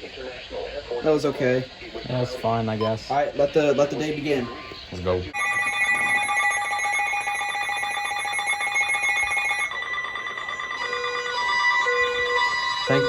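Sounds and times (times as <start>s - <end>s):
alternating beeps: 5.3s - 13.0s
electronic alarm tone: 5.3s - 13.0s.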